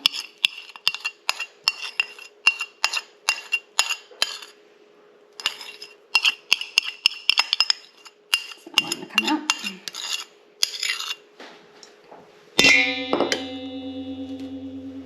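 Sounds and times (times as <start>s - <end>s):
metal spoon clinking glass bowl: 0.0s - 4.6s, 5.4s - 11.2s.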